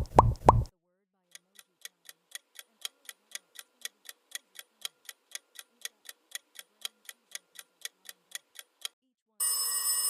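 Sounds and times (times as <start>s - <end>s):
countdown timer ticking: 0.0s - 0.7s.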